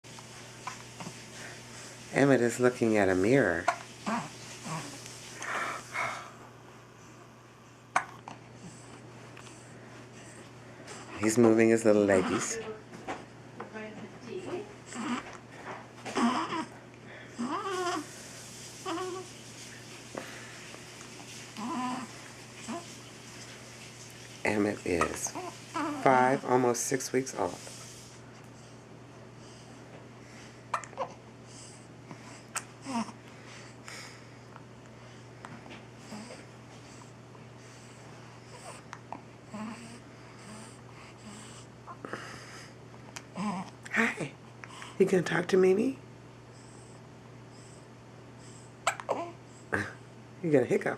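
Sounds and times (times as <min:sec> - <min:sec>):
quiet baby breathing: 0:00.2 - 0:12.7, 0:14.4 - 0:30.7, 0:31.4 - 0:45.2, 0:46.5 - 0:49.8
baby vocal sounds: 0:03.6 - 0:05.1, 0:12.1 - 0:12.7, 0:14.8 - 0:15.4, 0:16.0 - 0:16.8, 0:17.4 - 0:18.1, 0:18.8 - 0:19.3, 0:21.5 - 0:23.0, 0:24.8 - 0:26.6, 0:32.5 - 0:33.2, 0:39.5 - 0:42.0, 0:43.2 - 0:43.9, 0:48.8 - 0:49.9
baby hiccuping: 0:07.9 - 0:08.3, 0:30.7 - 0:31.2, 0:48.8 - 0:49.4.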